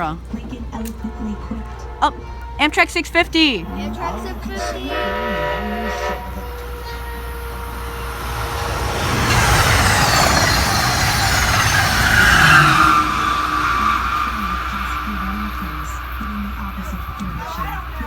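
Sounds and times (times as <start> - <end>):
train passing fast: 0.0 - 18.0
train horn chord: 0.8 - 10.3, 12.1 - 18.0
train whine falling in pitch: 3.6 - 18.0.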